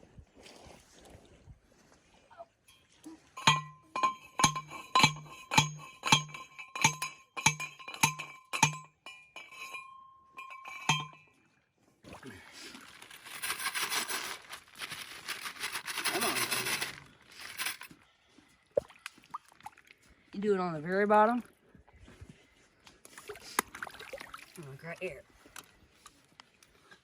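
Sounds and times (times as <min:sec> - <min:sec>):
post driver striking metal post: 0:03.5 - 0:08.9
steady rustling: 0:12.8 - 0:17.9.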